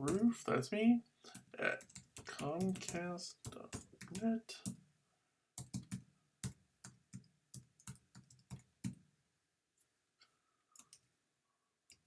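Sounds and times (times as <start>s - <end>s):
keyboard keys clicking: 1.4s - 4.3s, 5.6s - 9.0s.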